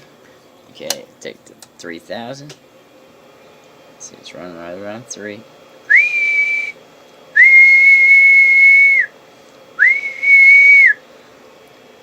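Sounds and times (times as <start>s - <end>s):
person whistling a high note: 5.9s - 6.8s, 7.4s - 9.1s, 9.8s - 11.0s.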